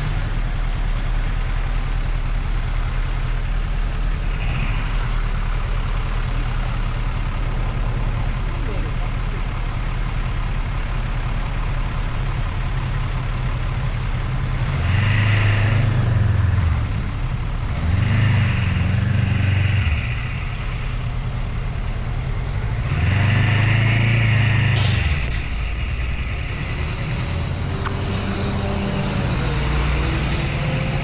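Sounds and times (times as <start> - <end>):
motorcycle engine revving: 14.1 - 20.7, 22.6 - 31.0.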